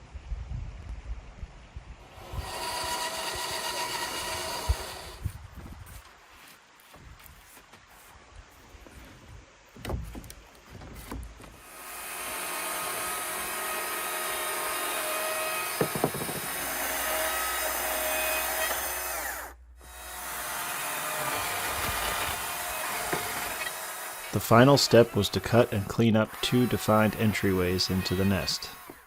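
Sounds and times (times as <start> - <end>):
power tool running: 2.0 - 5.4, 11.6 - 29.0
wood knocks: 9.8 - 11.6, 15.7 - 16.7, 21.1 - 23.8.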